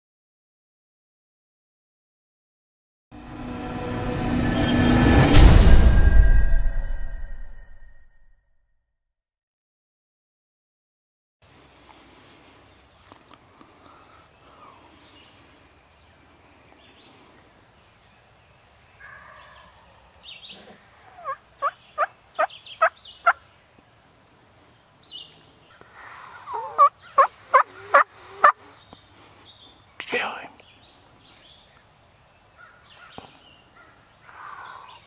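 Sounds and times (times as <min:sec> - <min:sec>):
wild turkey calling: 0:19.0 - 0:23.5, 0:25.3 - 0:28.8, 0:32.5 - 0:35.0.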